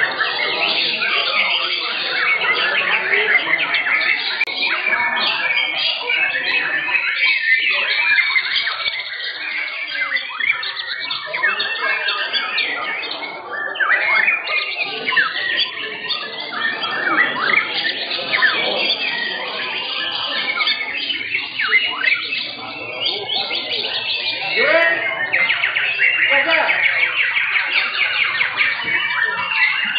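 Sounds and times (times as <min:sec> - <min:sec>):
birds singing whistles and chatter: 0:00.0 - 0:29.9.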